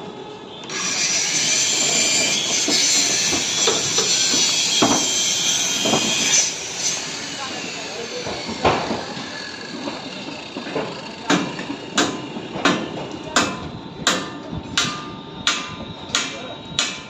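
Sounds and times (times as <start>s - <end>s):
hammer blows on metal: 11.3s - 17.0s.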